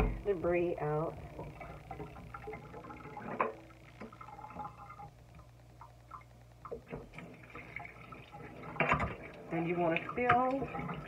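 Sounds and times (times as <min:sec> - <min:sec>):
faint water: 0:00.0 - 0:11.0
knocks and clicks in sink: 0:08.6 - 0:11.0.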